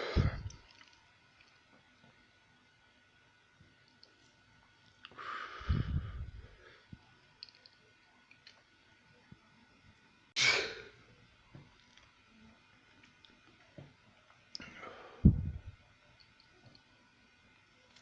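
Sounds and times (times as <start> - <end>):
person breathing out: 0.0 - 0.5, 5.1 - 6.8
person sneezing: 10.4 - 10.9.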